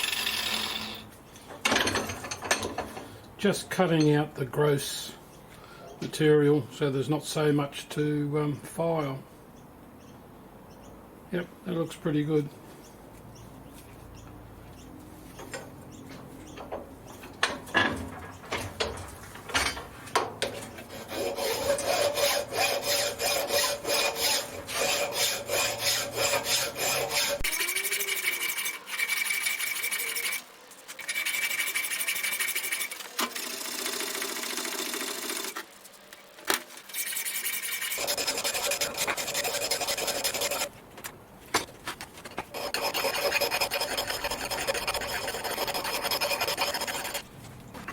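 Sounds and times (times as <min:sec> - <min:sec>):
hand file rasping on steel: 0:20.8 - 0:30.4, 0:31.0 - 0:33.0, 0:36.9 - 0:40.7, 0:42.5 - 0:47.2.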